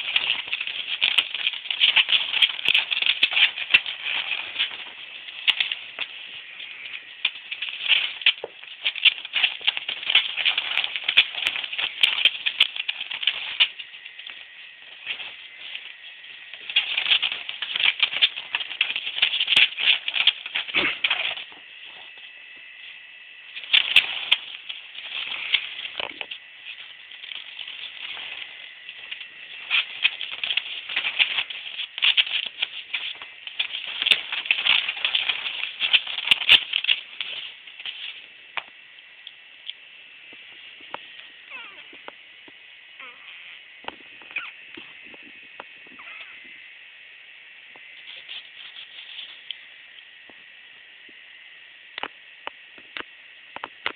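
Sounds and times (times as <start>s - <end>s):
dog claws clicking on hard floor: 0.0s - 14.4s
dog claws scratching on floor: 0.0s - 22.2s, 23.5s - 38.8s, 47.8s - 49.6s.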